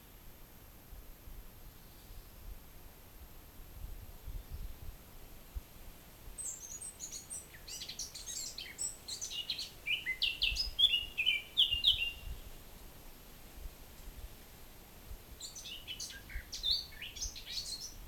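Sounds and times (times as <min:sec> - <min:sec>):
songbird singing: 0:06.3 - 0:12.6, 0:15.4 - 0:18.0.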